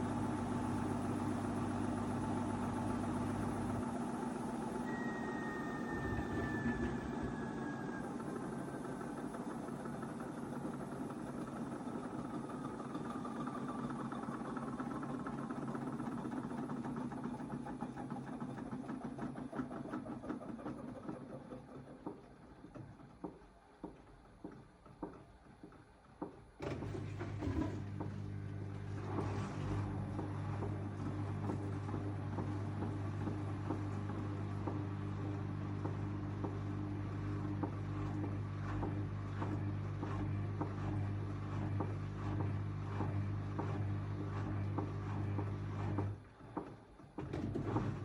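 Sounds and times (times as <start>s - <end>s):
washing machine motor whine: 0.0s - 48.0s
washing machine drum knocking: 30.0s - 36.7s.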